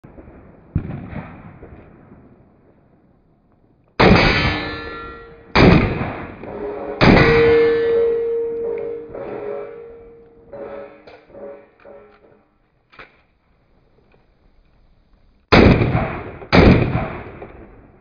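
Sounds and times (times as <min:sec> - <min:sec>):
sharp bangs with metallic ringing: 0:04.0 - 0:12.5, 0:15.5 - 0:17.8.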